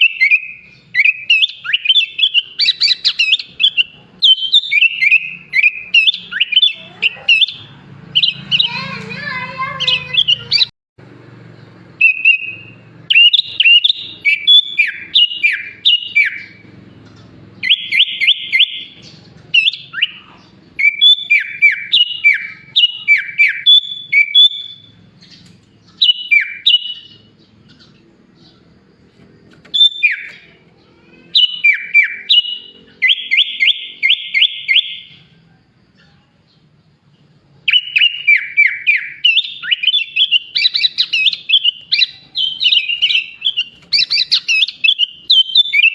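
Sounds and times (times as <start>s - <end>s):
bulbul singing whistled phrases: 0.0s - 10.7s, 11.9s - 45.9s
rapid repeated bird notes: 0.0s - 45.9s.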